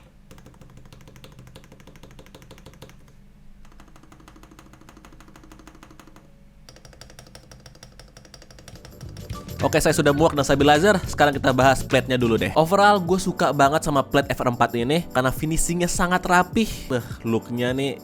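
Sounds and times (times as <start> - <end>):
mechanical keyboard clacking: 0.0 - 10.8.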